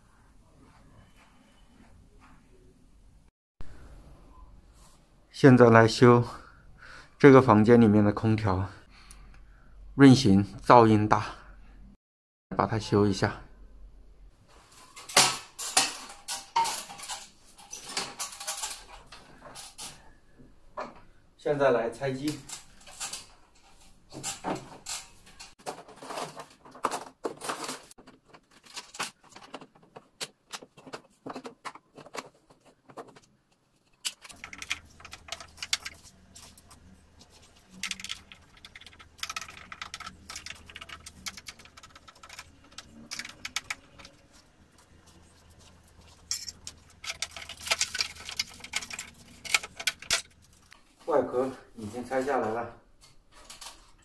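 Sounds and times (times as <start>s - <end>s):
plastic casing clicks and clatter: 46.2s - 50.8s.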